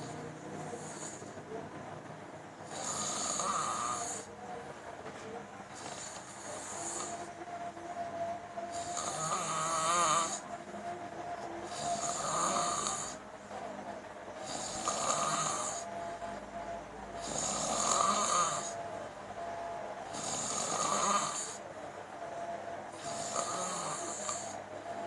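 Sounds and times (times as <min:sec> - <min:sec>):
person snoring: 0:02.6 - 0:04.3, 0:08.7 - 0:10.4, 0:11.7 - 0:13.2, 0:14.4 - 0:15.9, 0:17.2 - 0:18.8, 0:20.1 - 0:21.6, 0:22.9 - 0:24.6.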